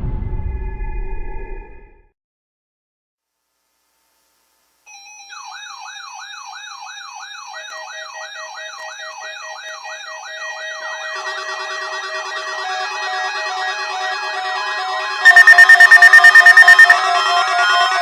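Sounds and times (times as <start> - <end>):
electronic warbling siren tone: 15.3 - 17.0.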